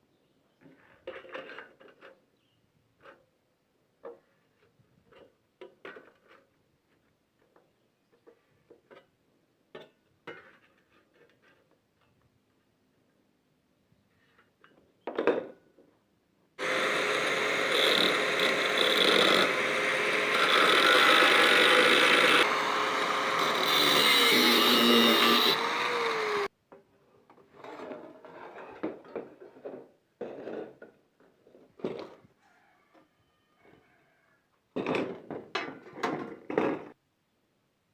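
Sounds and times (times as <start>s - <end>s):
power tool motor running: 16.6s - 26.5s.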